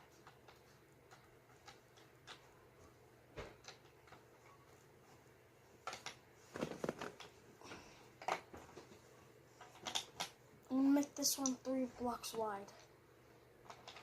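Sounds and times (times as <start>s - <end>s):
plastic bricks clicking and clattering: 5.8s - 7.3s, 9.6s - 10.3s, 13.6s - 14.0s.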